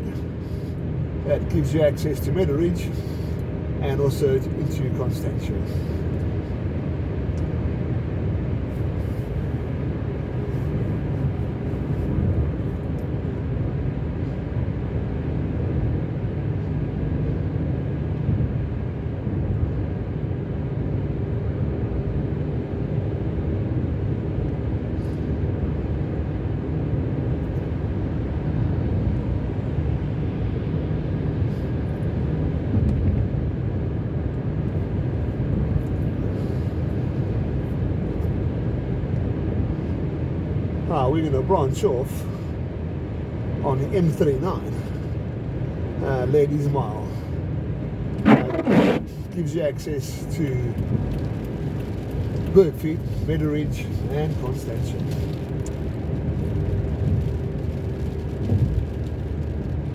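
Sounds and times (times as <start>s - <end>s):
car cabin road drone: 0.0s - 59.9s.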